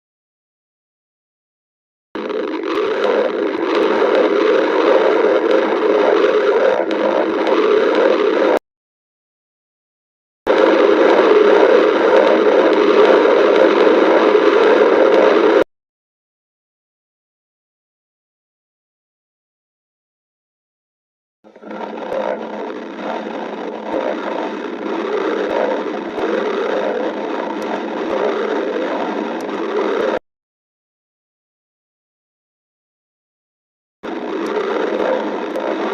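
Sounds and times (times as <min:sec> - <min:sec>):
stomach growling: 0:02.2 - 0:08.6, 0:10.5 - 0:15.7, 0:21.5 - 0:30.2, 0:34.1 - 0:35.9.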